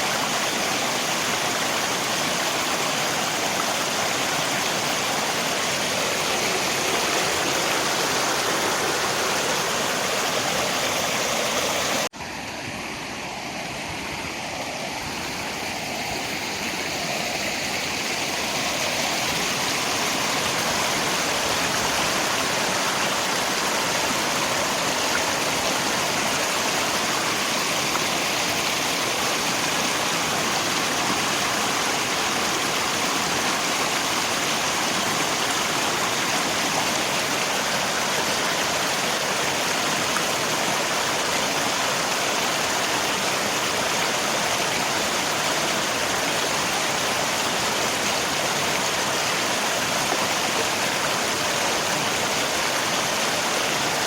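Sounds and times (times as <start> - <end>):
rain: 0.0 - 54.0
river water rushing: 0.0 - 54.0.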